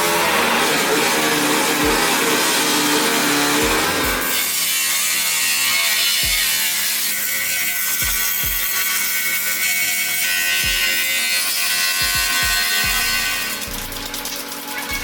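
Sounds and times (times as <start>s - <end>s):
rasping scraping noise: 0.0s - 15.0s
rap music with bass drops: 1.7s - 4.4s, 6.2s - 6.5s, 8.0s - 8.7s, 10.6s - 11.0s, 12.0s - 15.0s
pitched tones: 12.9s - 15.0s.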